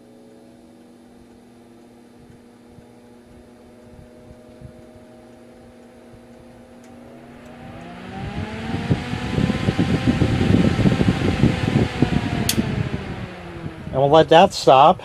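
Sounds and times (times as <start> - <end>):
fan whine and rattle: 0.0 - 15.0.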